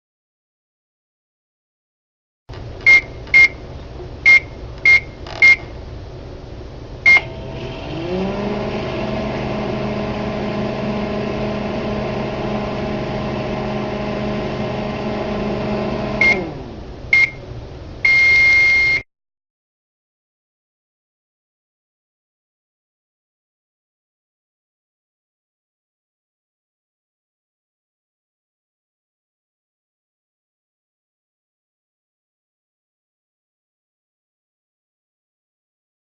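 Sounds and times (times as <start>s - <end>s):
microwave oven humming: 2.5s - 19.0s
microwave keypad beeps: 2.8s - 3.6s, 4.3s - 5.7s, 7.1s - 7.3s, 17.2s - 17.4s, 18.0s - 19.0s
long end-of-cycle beep: 2.9s - 3.6s, 4.3s - 5.7s, 7.1s - 7.3s, 16.2s - 16.5s, 17.1s - 17.4s, 18.0s - 19.1s.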